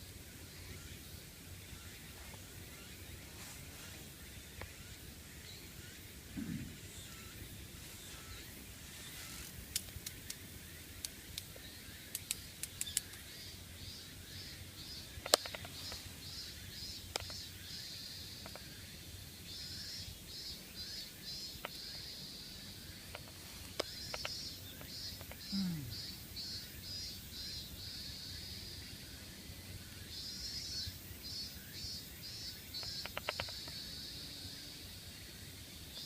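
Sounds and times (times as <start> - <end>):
faint outdoor background: 0.0 - 36.0
insect calling in high pulses: 0.3 - 36.0
sharp clicks and snaps: 9.7 - 10.4, 11.0 - 13.2, 15.2 - 16.0, 17.1 - 17.4, 32.8 - 33.8.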